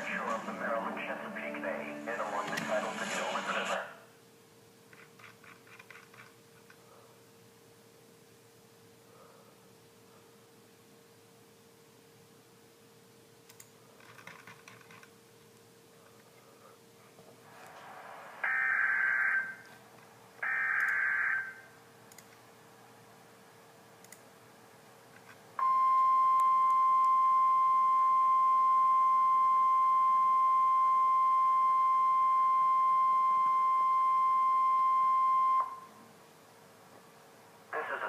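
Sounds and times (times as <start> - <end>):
steady alarm tone: 18.4 - 19.7, 20.4 - 21.7.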